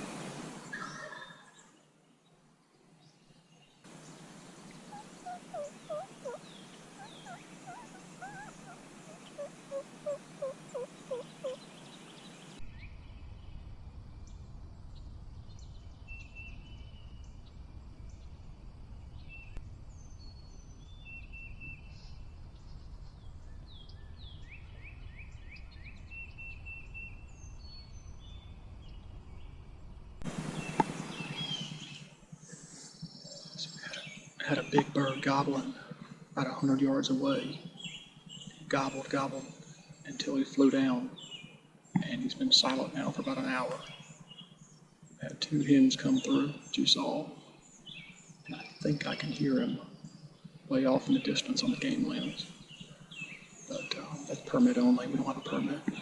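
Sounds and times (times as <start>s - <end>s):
songbirds chirping: 0.0s - 56.0s
turkey gobbling: 0.7s - 1.5s, 3.9s - 31.9s
burst of noise: 12.6s - 31.9s
low steady rumble: 12.6s - 32.0s.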